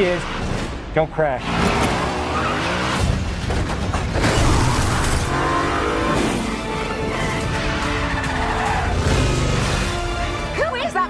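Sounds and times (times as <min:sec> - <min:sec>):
background music: 0:00.0 - 0:11.0
car engine revving hard: 0:01.4 - 0:10.2.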